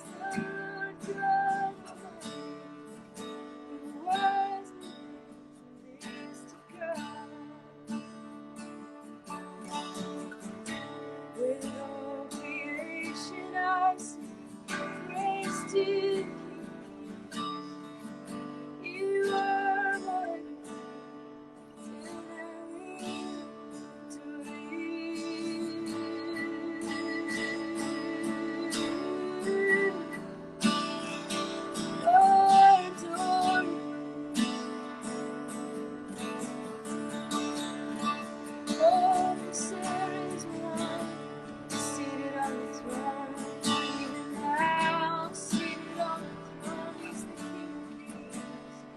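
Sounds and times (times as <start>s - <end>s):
woman singing with vibrato: 0.0s - 8.0s, 11.4s - 17.6s, 18.7s - 20.7s, 22.0s - 35.0s, 37.9s - 48.8s
acoustic guitar strumming: 0.0s - 48.9s.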